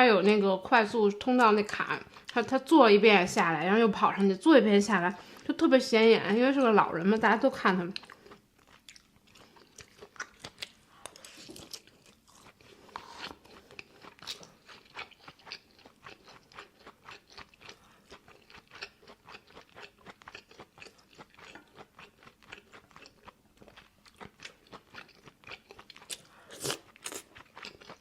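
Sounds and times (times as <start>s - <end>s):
person chewing crunchy food: 7.9s - 28.0s.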